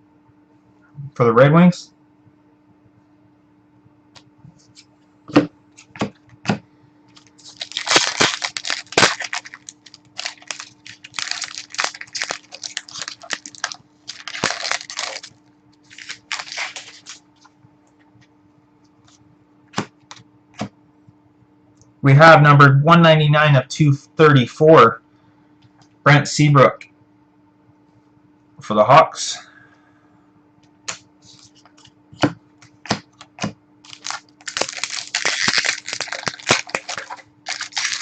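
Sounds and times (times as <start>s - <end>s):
card pack crinkling and tearing: 7.1s - 17.2s, 32.9s - 38.0s.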